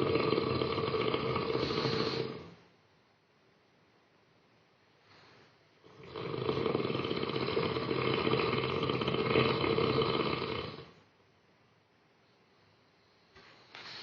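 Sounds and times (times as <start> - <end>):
woman snoring loudly: 0.0 - 2.6, 5.8 - 10.9
quiet breathing: 0.0 - 2.7, 4.9 - 11.1, 12.2 - 14.0.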